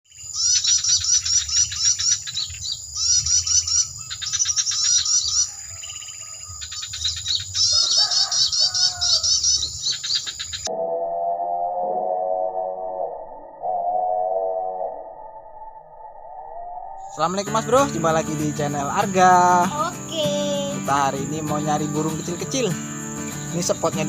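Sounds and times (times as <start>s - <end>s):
songbirds chirping: 0.1s - 10.7s, 17.0s - 24.0s.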